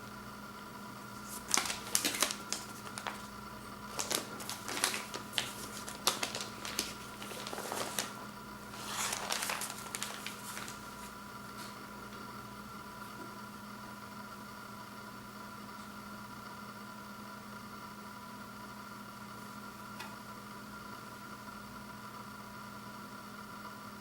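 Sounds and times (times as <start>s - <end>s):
faint steady hum: 0.0s - 24.0s
hands handling record sleeve: 1.2s - 11.8s
paper rustling: 1.2s - 11.8s.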